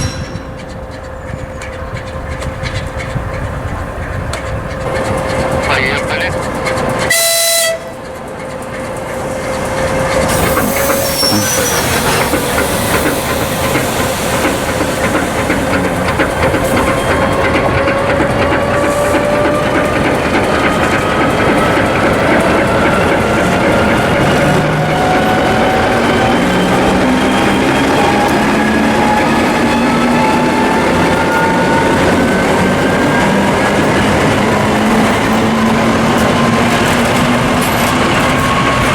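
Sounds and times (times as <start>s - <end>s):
diesel locomotive engine whine: 0.0s - 38.9s
train rolling: 0.0s - 38.9s
locomotive horn: 7.0s - 8.1s.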